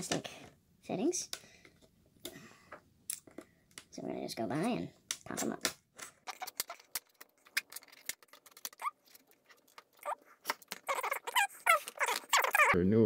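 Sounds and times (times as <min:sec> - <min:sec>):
plastic creaking: 0:05.3 - 0:12.8.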